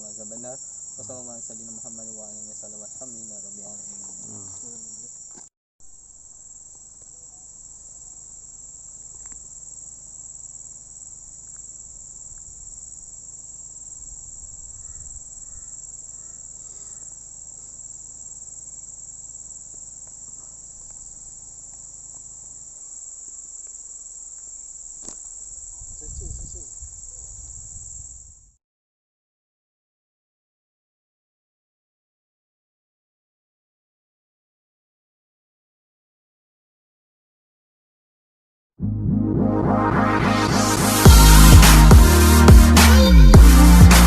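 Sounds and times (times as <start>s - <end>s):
insect chorus drone: 0.0s - 28.6s, 40.3s - 44.0s.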